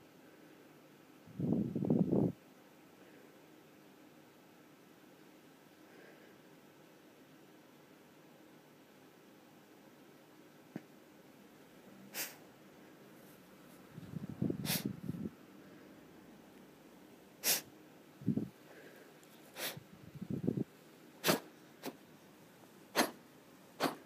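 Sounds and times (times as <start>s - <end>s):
sharp hissing breaths: 12.1s - 12.5s, 14.6s - 15.0s, 17.4s - 17.7s, 18.6s - 19.9s, 21.2s - 22.0s, 22.9s - 23.2s, 23.8s - 24.0s.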